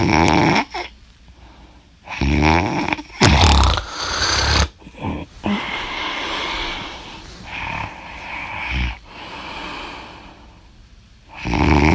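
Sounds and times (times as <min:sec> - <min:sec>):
low snort: 0:02.1 - 0:05.6
woman breathing noisily: 0:03.8 - 0:04.7, 0:05.4 - 0:10.8.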